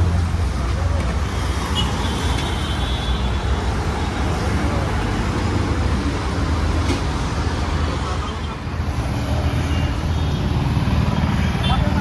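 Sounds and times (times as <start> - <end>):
road traffic rumble: 0.0 - 12.0.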